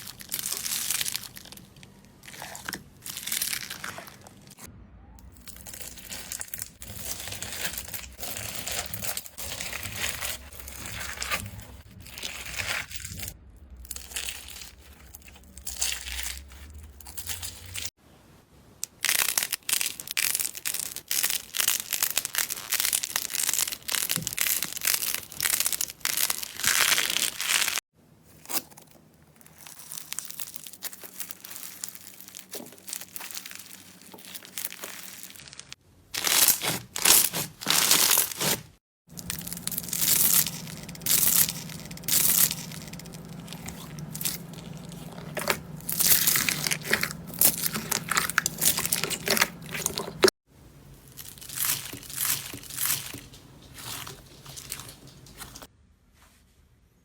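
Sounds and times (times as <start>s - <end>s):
slime crackling and popping: 0.0s - 4.3s, 18.9s - 27.8s, 29.5s - 50.3s, 51.1s - 55.7s.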